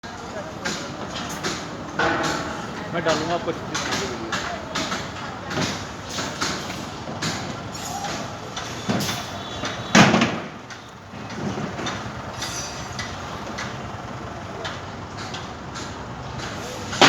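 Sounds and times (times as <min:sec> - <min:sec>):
steady background rumble: 0:00.0 - 0:07.2
construction knocks and clanks: 0:00.0 - 0:17.0.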